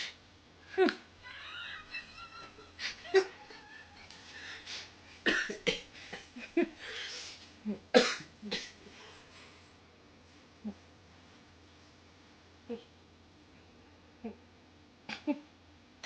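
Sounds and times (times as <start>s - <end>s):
person coughing: 5.2s - 6.6s, 7.9s - 8.8s.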